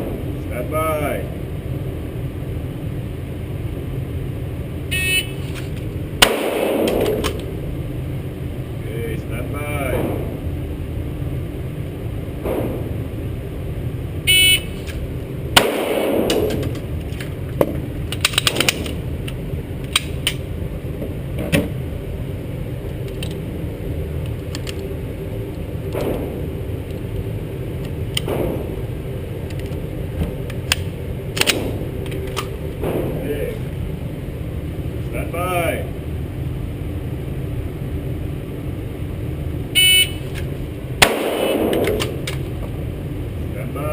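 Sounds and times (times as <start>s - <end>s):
pistol shot: 6.2s - 7.4s, 15.6s - 16.7s, 41.0s - 42.3s.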